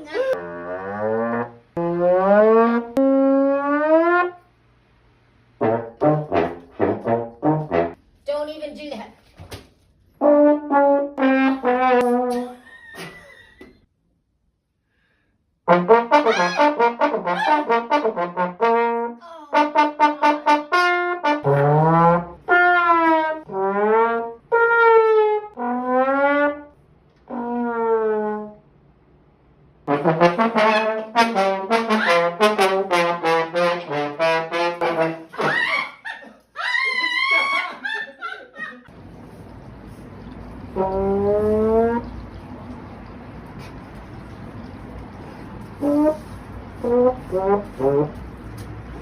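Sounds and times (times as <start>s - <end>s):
trombone-like brass notes: 0.3s - 4.5s, 5.6s - 8.0s, 10.2s - 12.6s, 15.7s - 28.7s, 29.9s - 35.8s, 40.6s - 42.1s, 45.6s - 49.0s.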